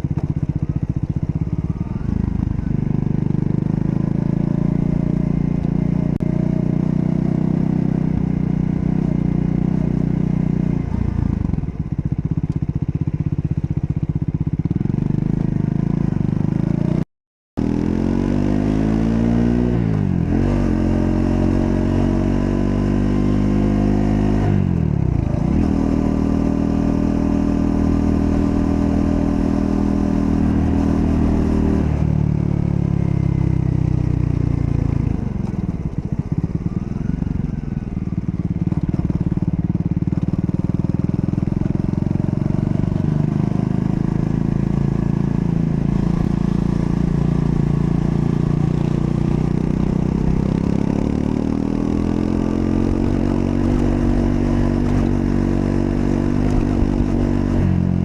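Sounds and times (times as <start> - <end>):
motorcycle engine revving: 0.0 - 17.0, 17.6 - 58.0.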